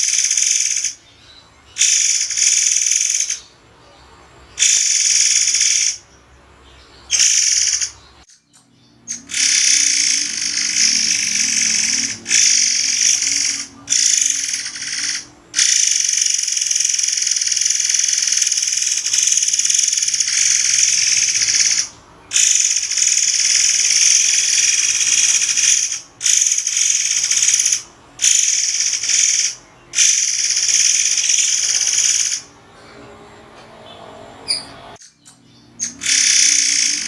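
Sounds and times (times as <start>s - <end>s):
bird giving shrill hissing calls: 0.0s - 1.0s, 1.8s - 3.4s, 4.6s - 6.0s, 7.1s - 7.9s, 9.1s - 32.5s, 35.8s - 37.0s.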